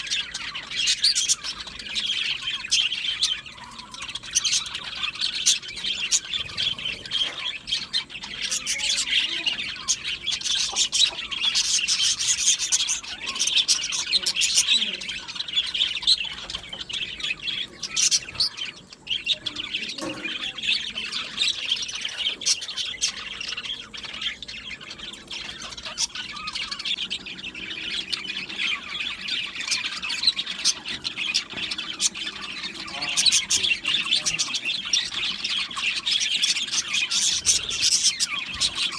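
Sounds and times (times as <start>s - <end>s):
budgerigars chattering and chirping: 0.0s - 38.9s.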